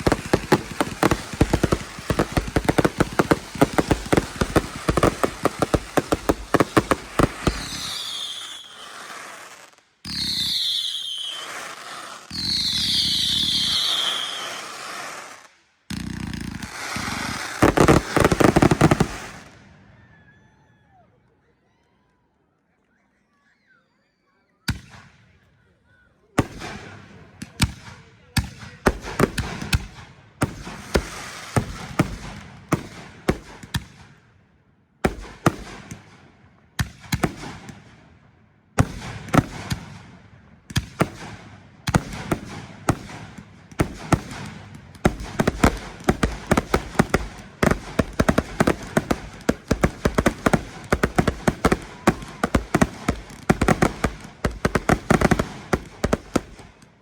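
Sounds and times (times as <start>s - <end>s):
fireworks crackling: 0.0s - 19.6s, 28.9s - 33.8s, 38.8s - 40.0s, 40.7s - 57.0s
fireworks bangs: 0.0s - 19.8s, 26.4s - 34.0s, 38.8s - 57.0s.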